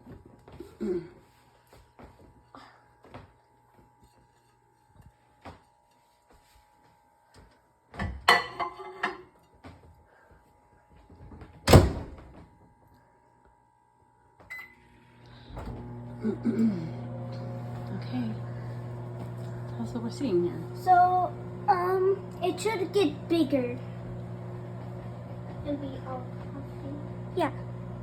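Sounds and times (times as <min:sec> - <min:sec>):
microwave door shutting: 0:11.6 - 0:12.3.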